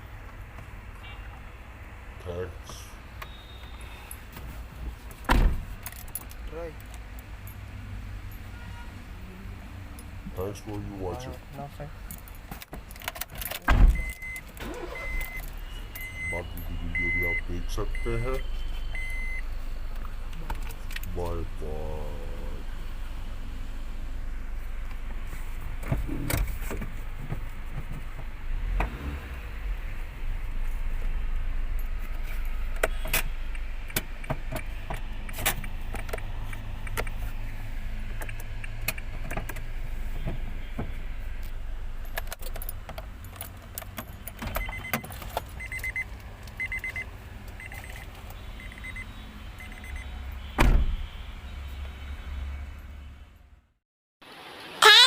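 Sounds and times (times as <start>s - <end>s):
clicking and rattling handling noise: 5.0s - 7.6s, 12.1s - 15.6s, 41.4s - 46.6s.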